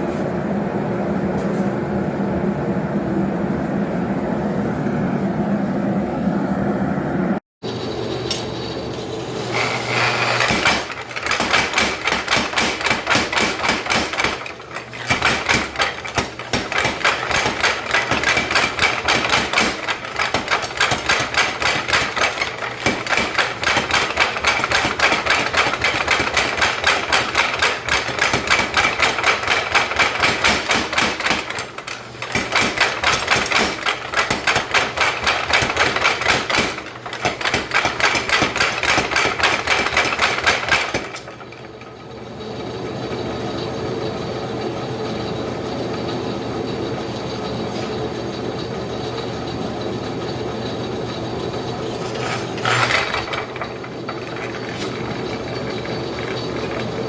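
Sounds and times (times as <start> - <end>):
gas forge burner running: 7.6 - 57.0
power hammer striking hot steel: 9.5 - 41.4.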